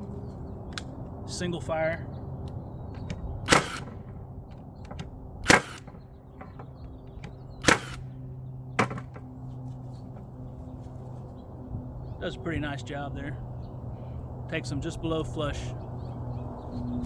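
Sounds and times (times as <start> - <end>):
nail gun firing into wood: 3.0 - 4.2, 4.9 - 8.0, 8.8 - 9.2.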